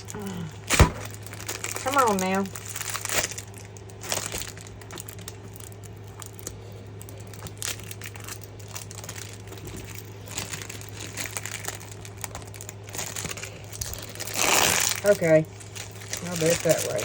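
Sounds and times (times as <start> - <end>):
plastic packaging crinkling: 0.0 - 17.0
steady low hum: 0.0 - 17.0.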